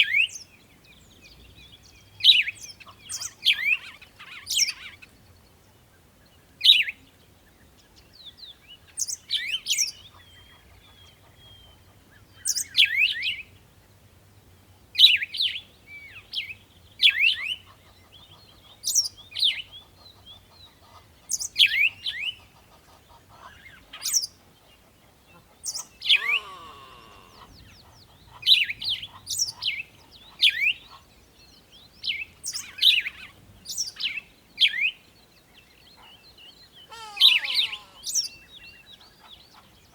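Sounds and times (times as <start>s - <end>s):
lower rattly bird call: 25.6s - 31.0s, 36.0s - 39.2s
bird chirping high calls: 25.7s - 27.7s, 36.6s - 38.8s.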